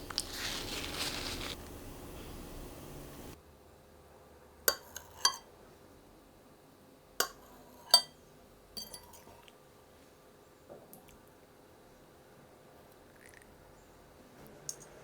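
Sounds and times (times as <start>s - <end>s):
utensil clinking on dishware: 4.7s - 5.5s, 7.2s - 8.2s, 8.8s - 9.5s.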